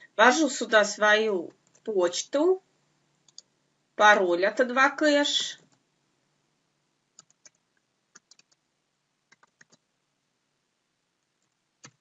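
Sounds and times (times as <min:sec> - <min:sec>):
keyboard keystrokes: 0:07.2 - 0:08.6, 0:09.3 - 0:09.8.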